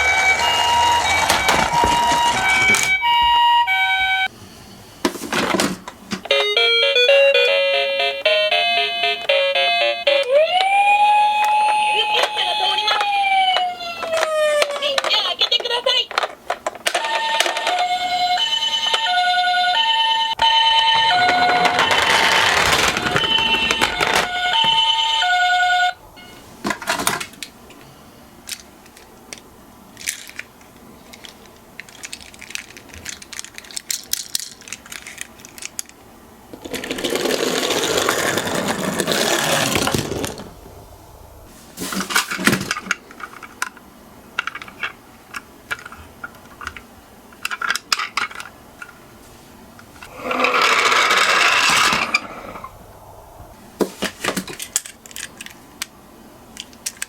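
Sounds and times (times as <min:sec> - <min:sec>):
toy cars rolling and clattering: 0:00.0 - 0:03.1, 0:11.7 - 0:26.0, 0:28.5 - 0:40.6, 0:41.8 - 0:43.8, 0:44.4 - 0:49.0, 0:49.9 - 0:52.8, 0:54.0 - 0:55.9, 0:56.6 - 0:57.0
toy electronic siren: 0:00.0 - 0:04.3, 0:06.3 - 0:14.7, 0:17.0 - 0:26.4.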